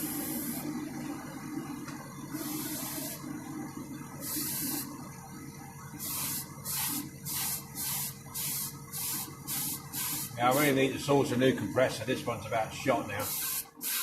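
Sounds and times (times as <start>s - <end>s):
airbrush spraying hiss: 0.0s - 0.6s, 2.4s - 3.2s, 4.2s - 4.9s, 6.0s - 10.7s, 13.2s - 14.0s
small compressor humming: 0.0s - 14.0s.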